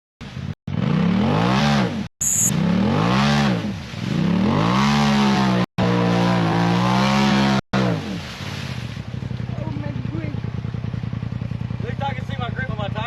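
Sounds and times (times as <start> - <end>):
vehicle engine revving: 0.2 - 13.0
high beep: 2.2 - 2.5.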